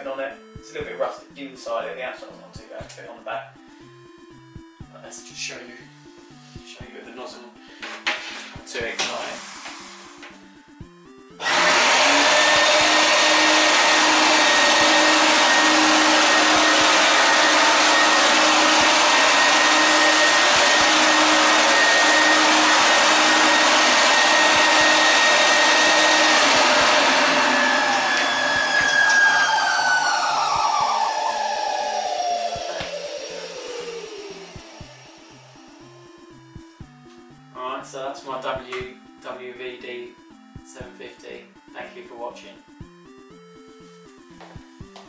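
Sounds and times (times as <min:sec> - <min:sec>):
vacuum cleaner running with whine: 0:08.1 - 0:10.4, 0:11.4 - 0:36.7.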